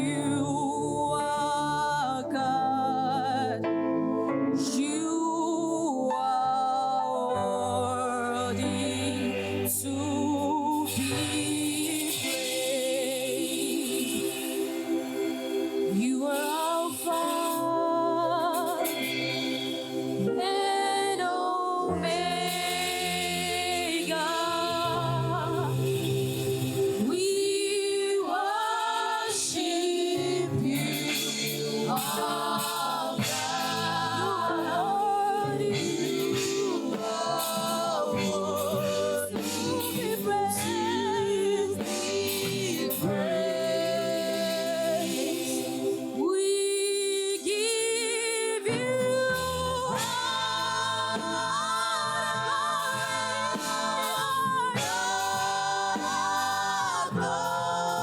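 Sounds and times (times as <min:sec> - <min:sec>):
choir singing gospel song: 0:00.0 - 0:58.0
bass: 0:48.8 - 0:58.0.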